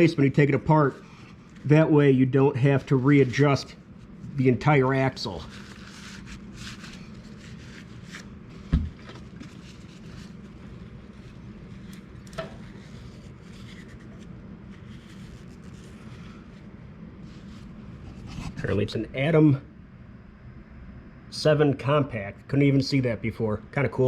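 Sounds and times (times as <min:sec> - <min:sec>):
rubbing and handling bicycle parts: 0:00.0 - 0:18.9
steady low hum: 0:00.0 - 0:24.0.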